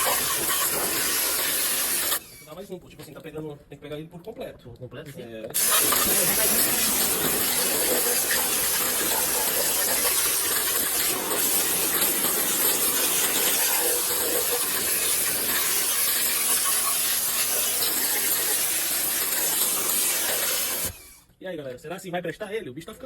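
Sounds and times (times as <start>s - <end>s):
pressure washer spraying water: 0.0s - 2.4s, 5.6s - 21.2s.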